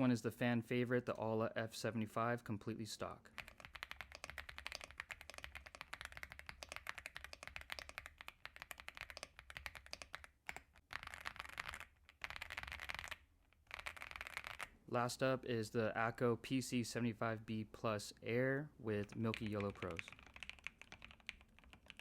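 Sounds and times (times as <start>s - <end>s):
fast typing on mechanical keyboard: 3.3s - 14.7s, 19.0s - 22.0s.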